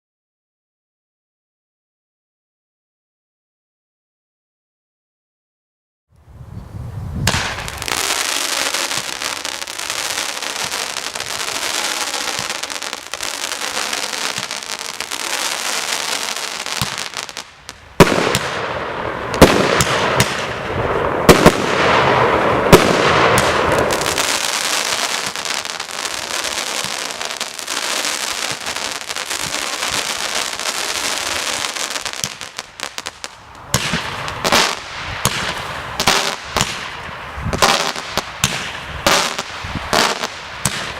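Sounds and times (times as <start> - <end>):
firework crackling: 7.3 - 40.9
loud sharp bangs: 33.7 - 37.0.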